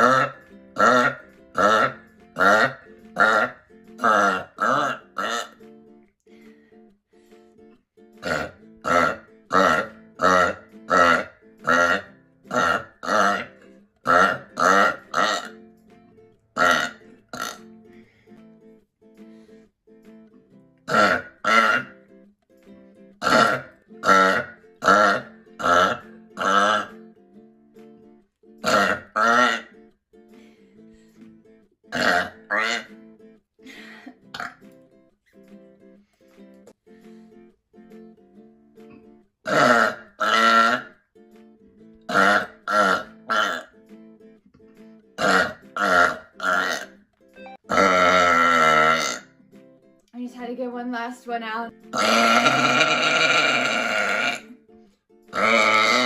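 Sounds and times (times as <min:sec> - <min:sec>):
person burping: 0:00.0 - 0:05.5, 0:08.2 - 0:15.6, 0:16.6 - 0:17.7, 0:20.9 - 0:22.0, 0:23.2 - 0:27.0, 0:28.6 - 0:29.8, 0:31.9 - 0:32.9, 0:34.0 - 0:34.6, 0:39.5 - 0:41.0, 0:42.1 - 0:43.7, 0:45.2 - 0:49.3, 0:51.9 - 0:54.6, 0:55.3 - 0:56.0
soft guitar music: 0:00.0 - 0:56.0.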